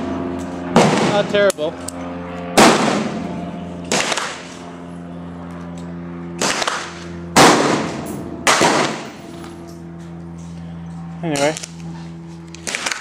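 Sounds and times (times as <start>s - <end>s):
steady hum: 0.0s - 13.0s
gunshots: 0.7s - 1.4s, 2.6s - 3.2s, 3.9s - 4.5s, 6.4s - 9.2s, 12.6s - 13.0s.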